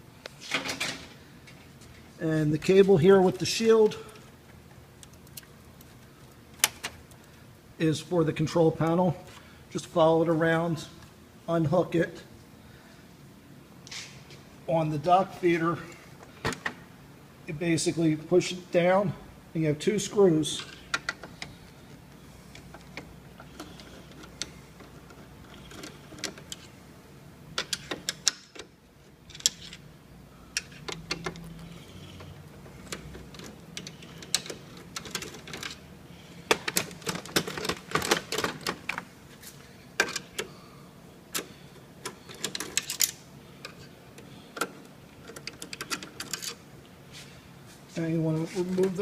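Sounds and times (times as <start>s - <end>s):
metal and plastic parts handled: 30.6s - 35.8s, 36.5s - 40.5s, 41.3s - 46.6s.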